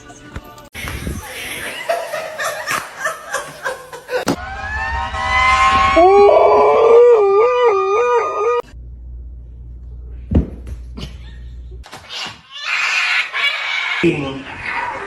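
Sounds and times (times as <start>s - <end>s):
low hum: 4.3s - 11.8s
animal howling: 4.4s - 8.7s.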